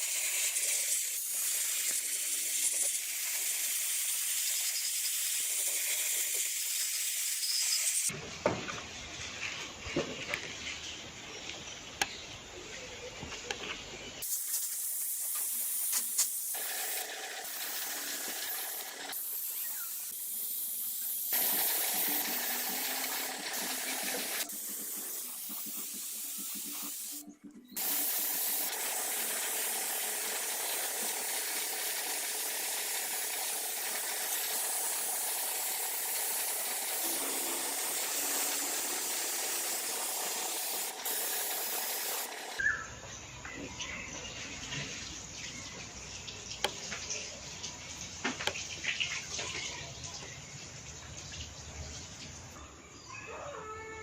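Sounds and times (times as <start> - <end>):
spraying hiss from a jet: 0.0 - 8.1, 14.2 - 42.6.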